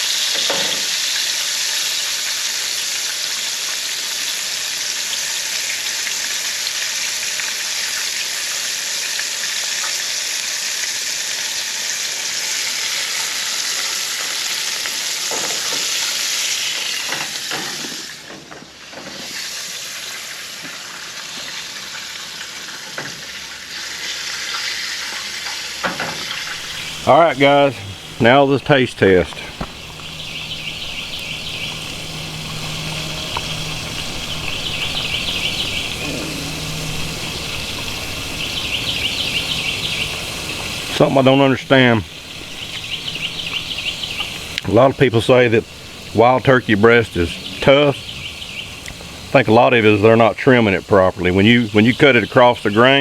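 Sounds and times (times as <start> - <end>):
meat sizzling in oil: 0.0 - 53.0.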